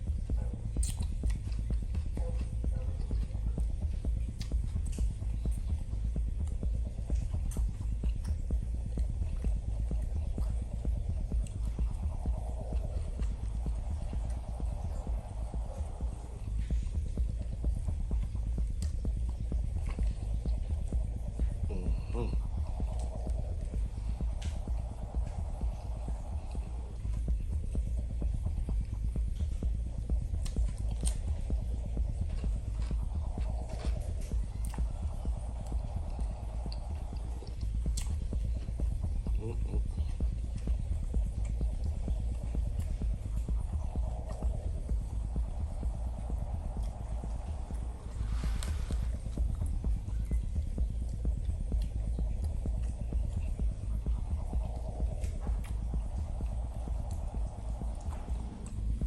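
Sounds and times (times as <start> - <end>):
chewing sandwich: 0.0 - 59.0
low rumble: 0.0 - 59.0.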